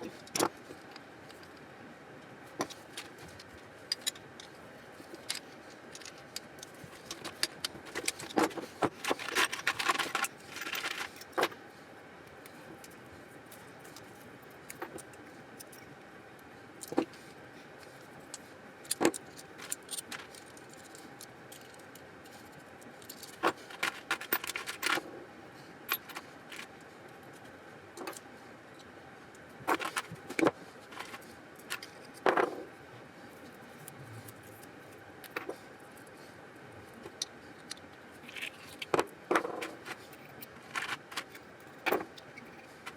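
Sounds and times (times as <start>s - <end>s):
small metal parts clinking: 2.6s - 11.6s, 18.3s - 25.0s, 25.9s - 26.7s, 29.7s - 32.4s, 37.6s - 42.9s.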